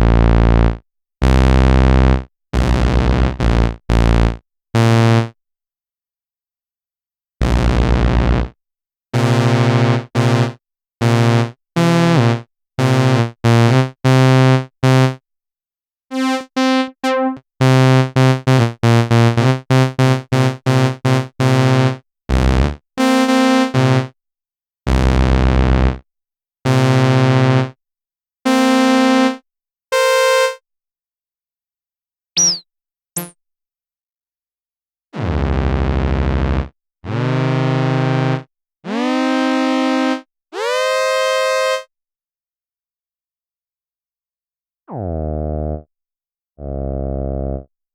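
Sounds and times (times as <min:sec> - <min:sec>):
bass synthesizer notes: 0:46.6 - 0:47.6.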